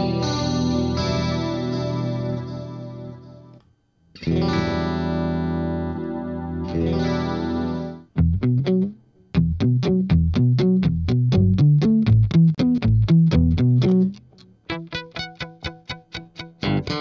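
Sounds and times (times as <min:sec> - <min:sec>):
fuzzed electric guitar chords: 0:00.0 - 0:03.6, 0:04.2 - 0:17.0
clipped low guitar notes: 0:08.2 - 0:15.0.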